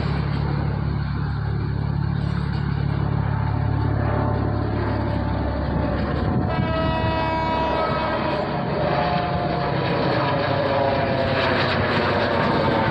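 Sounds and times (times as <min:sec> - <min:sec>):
rumble of passing train: 0:00.0 - 0:12.9
train horn: 0:05.0 - 0:09.7.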